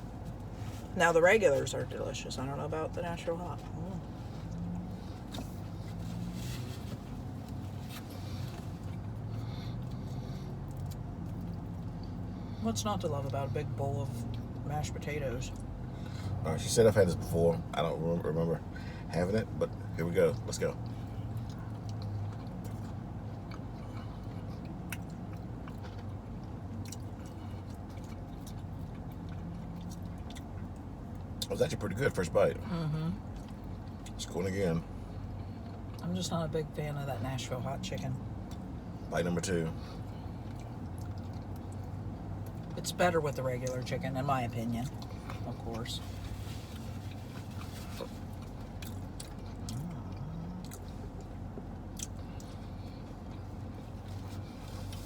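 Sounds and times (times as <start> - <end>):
steady low hum: 0.0 - 55.0
vehicle engine idling: 0.0 - 55.0
person chewing: 4.1 - 12.4, 20.8 - 31.5, 39.8 - 42.8, 44.9 - 55.0.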